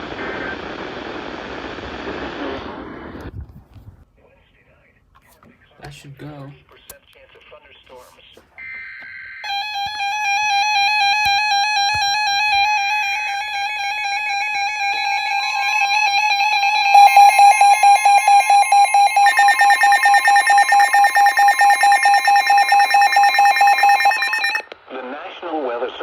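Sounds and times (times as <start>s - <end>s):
warbling alarm tone: 9.5s - 24.6s
weather radio alarm tones: 9.5s - 24.6s.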